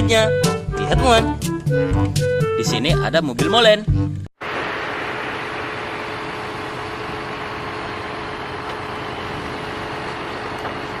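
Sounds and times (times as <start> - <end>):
truck engine running: 4.9 - 11.0.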